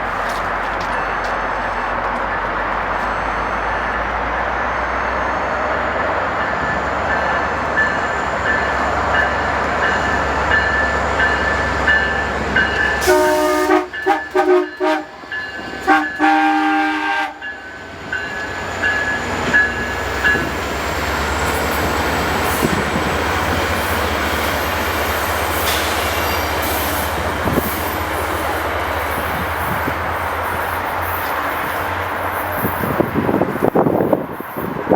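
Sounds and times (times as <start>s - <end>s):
diesel locomotive passing: 0.0s - 34.9s
train cars rolling on rails: 0.0s - 34.9s
train bell ringing: 0.2s - 16.8s, 17.4s - 34.9s
train air horn blasts: 13.0s - 15.2s, 15.8s - 17.5s.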